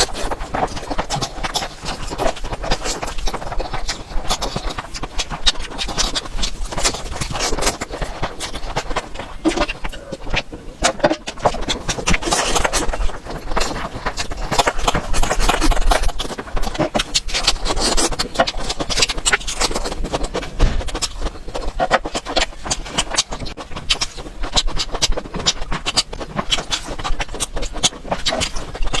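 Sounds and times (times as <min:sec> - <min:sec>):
close-miked chewing of food: 0:00.0 - 0:29.0.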